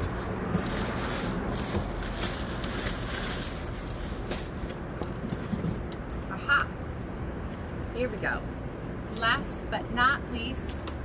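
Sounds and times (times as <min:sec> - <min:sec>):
packaging rustling: 0:00.0 - 0:05.9.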